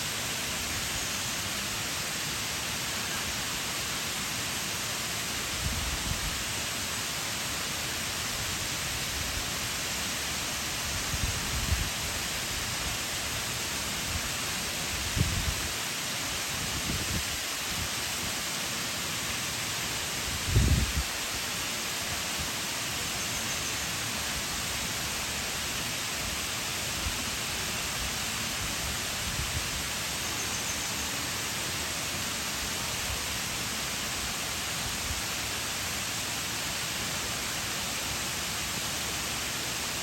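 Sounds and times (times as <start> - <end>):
waterfall rushing: 0.0 - 40.0.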